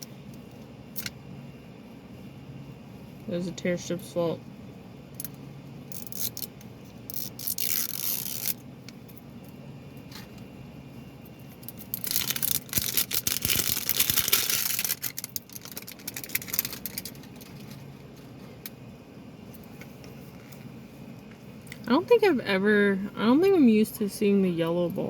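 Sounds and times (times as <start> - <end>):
plastic shrink wrap tearing: 7.1 - 8.6, 11.6 - 17.8.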